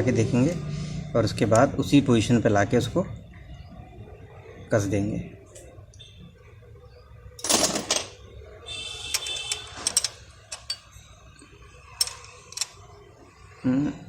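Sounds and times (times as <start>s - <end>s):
hand tools clicking on metal: 9.1s - 10.8s, 12.0s - 12.8s.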